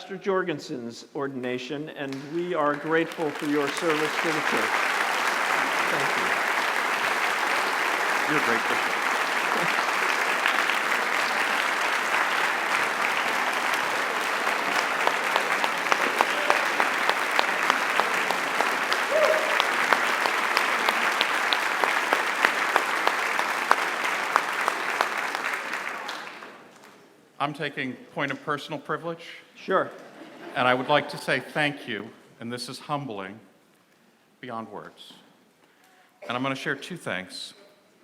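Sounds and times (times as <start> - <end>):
audience applauding: 2.1 - 26.8.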